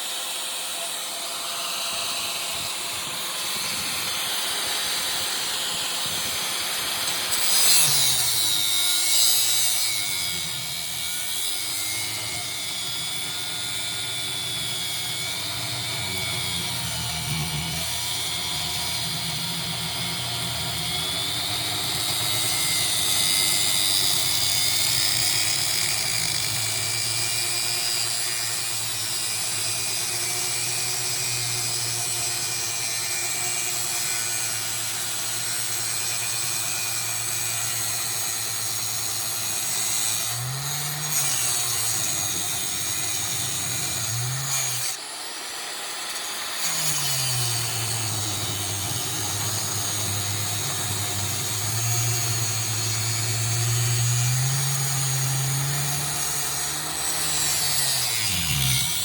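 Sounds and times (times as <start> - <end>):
angle grinder cutting metal: 0.0 - 59.0.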